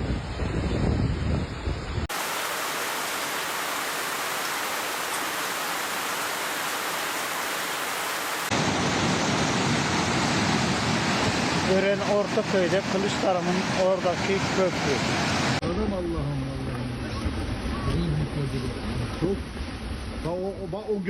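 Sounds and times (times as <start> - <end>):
wind on microphone: 0.0 - 2.7
rushing water: 2.0 - 15.6
heavy rain hiss: 2.1 - 15.6.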